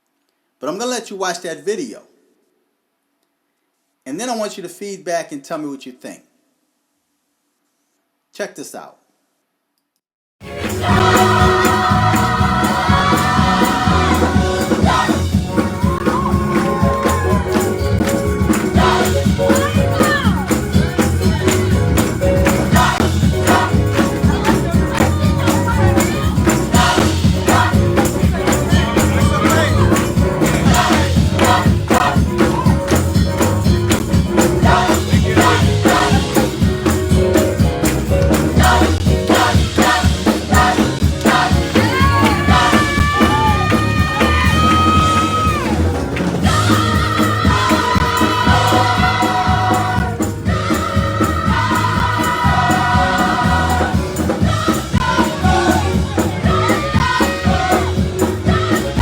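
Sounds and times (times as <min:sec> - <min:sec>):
choir singing: 0:10.4 - 0:37.0, 0:38.4 - 0:59.0
drums and percussion beat: 0:10.4 - 0:59.0.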